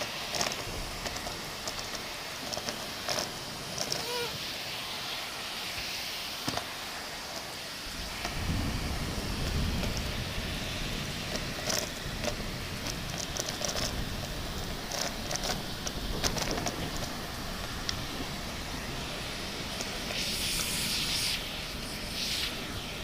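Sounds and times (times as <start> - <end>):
heavy rain hissing: 0.0 - 23.0
sharp drips and spatters: 0.0 - 23.0
low rumble of thunder: 7.9 - 20.8.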